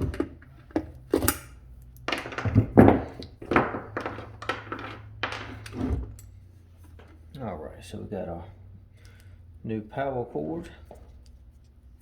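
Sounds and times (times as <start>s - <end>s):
metal clinks and knocks: 0.0s - 7.2s.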